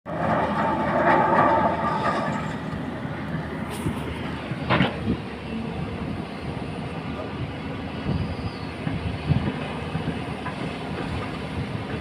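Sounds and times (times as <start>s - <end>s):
excavator rumbling and clattering: 0.1s - 12.0s.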